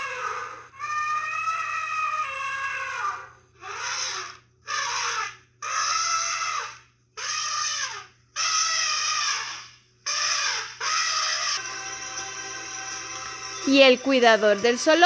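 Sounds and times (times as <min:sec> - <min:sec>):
elephant trumpeting: 0:03.6 - 0:11.8.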